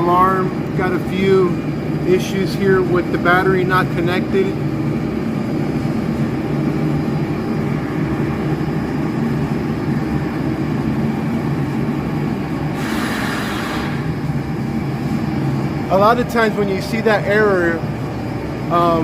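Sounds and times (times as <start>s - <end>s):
machine-room drone: 0.0s - 19.0s
loud hiss: 12.7s - 14.2s.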